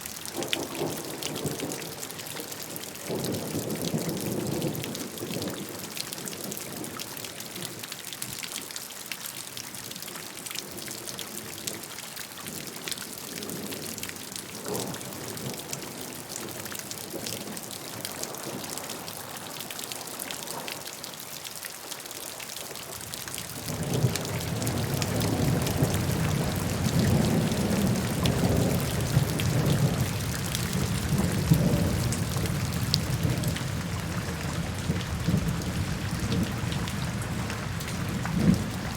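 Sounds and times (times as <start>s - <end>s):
rain falling: 0.0s - 38.9s
rolling rumble of thunder: 23.6s - 38.9s.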